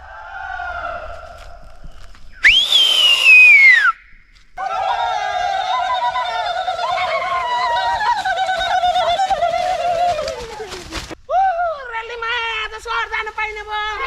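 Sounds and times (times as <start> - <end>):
whistle-like tone falling in pitch: 2.4 - 4.1.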